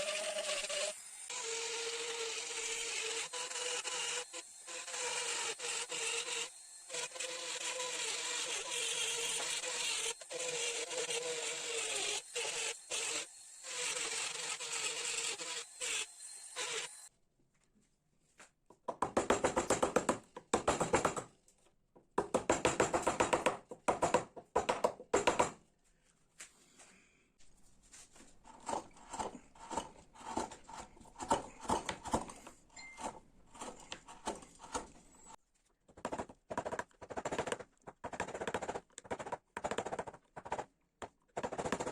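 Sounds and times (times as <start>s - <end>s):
tool scraping wood: 28.0s - 35.4s.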